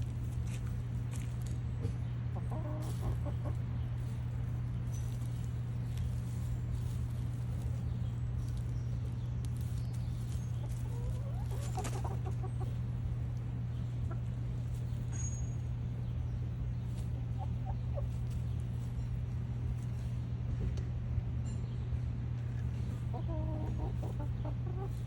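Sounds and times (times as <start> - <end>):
low steady hum: 0.0 - 25.0
hen clucking softly: 2.0 - 3.7, 10.6 - 13.0, 13.7 - 14.6, 17.0 - 18.5, 22.8 - 25.0.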